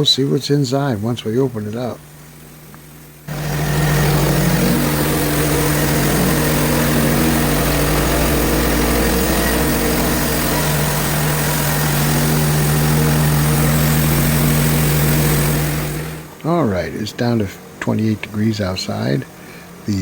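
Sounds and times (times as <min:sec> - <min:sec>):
sawmill engine running under load: 0:03.3 - 0:19.7.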